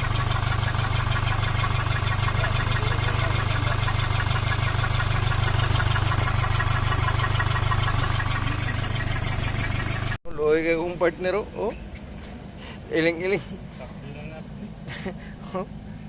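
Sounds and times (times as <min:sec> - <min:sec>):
engine idling: 0:00.0 - 0:16.0.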